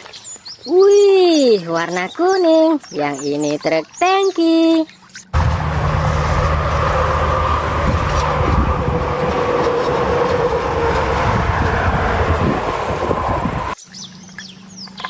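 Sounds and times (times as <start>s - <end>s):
pressure washer running: 5.4s - 11.2s.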